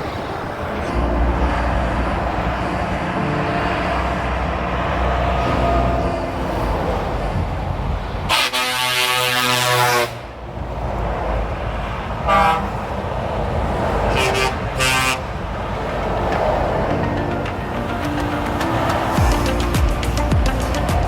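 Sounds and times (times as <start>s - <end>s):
motorway traffic: 0.0s - 21.0s
truck air horns: 8.3s - 10.3s, 12.3s - 12.9s, 14.1s - 15.4s.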